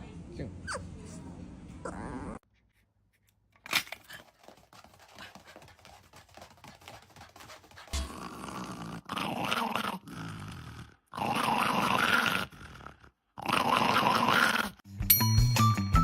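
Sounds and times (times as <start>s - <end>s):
dog growling: 1.8s - 2.4s, 8.0s - 14.8s.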